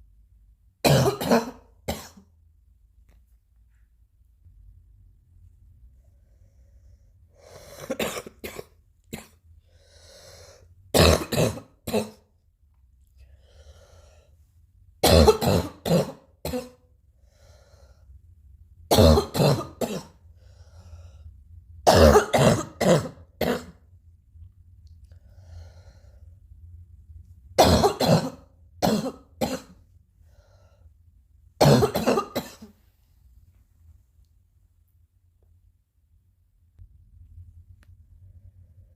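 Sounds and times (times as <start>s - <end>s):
person coughing harshly: 0.8s - 2.3s, 7.6s - 9.4s, 10.9s - 12.3s, 15.0s - 16.8s, 18.9s - 20.2s, 21.9s - 23.8s, 27.6s - 29.8s, 31.6s - 32.8s
faint breathing: 6.0s - 7.9s, 9.6s - 10.8s, 13.2s - 14.5s, 17.1s - 18.3s, 20.2s - 21.4s, 25.1s - 26.5s, 30.2s - 31.0s.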